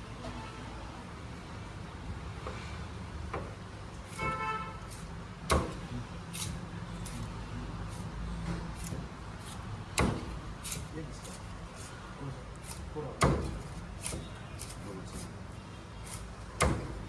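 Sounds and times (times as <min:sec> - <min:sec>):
low traffic hum: 0:00.0 - 0:17.0
cleaver chopping fish: 0:04.9 - 0:07.2, 0:08.5 - 0:11.9, 0:12.6 - 0:15.3, 0:16.0 - 0:17.0.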